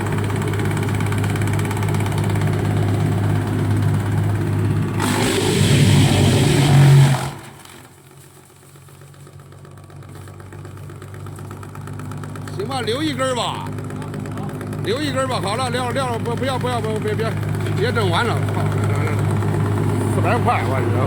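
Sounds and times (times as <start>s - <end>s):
wood chipper grinding wood: 0.0s - 21.0s
wood chipper humming: 0.0s - 21.0s.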